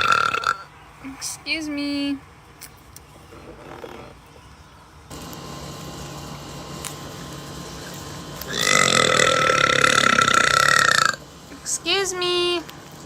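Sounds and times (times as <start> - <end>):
woman burping: 0.0 - 0.7, 8.5 - 11.2.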